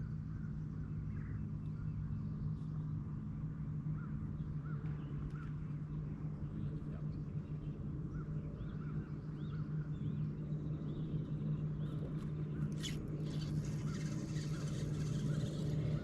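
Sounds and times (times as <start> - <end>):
steady low hum: 0.0 - 16.0
birds chirping: 4.0 - 16.0.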